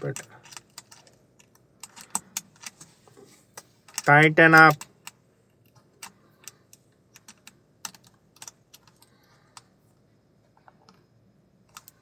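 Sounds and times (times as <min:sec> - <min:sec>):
metal key and screw clicking: 0:00.0 - 0:02.8, 0:03.8 - 0:09.7, 0:11.7 - 0:12.0.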